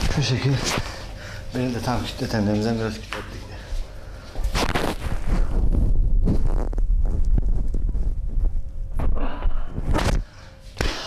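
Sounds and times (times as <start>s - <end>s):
rustling: 4.5s - 8.8s.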